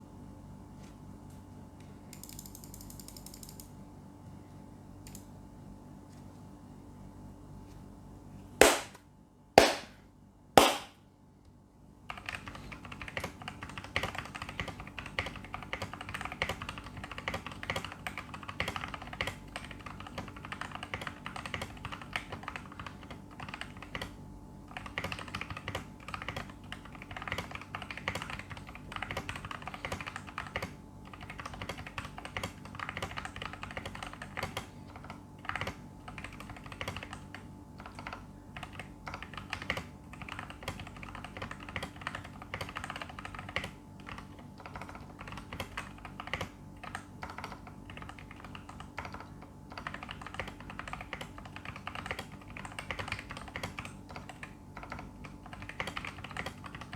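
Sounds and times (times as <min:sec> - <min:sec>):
typing on mechanical keyboard: 0:02.1 - 0:03.7, 0:12.1 - 0:56.9
loud sharp knocks: 0:08.6 - 0:09.0, 0:09.6 - 0:10.0, 0:10.6 - 0:11.0.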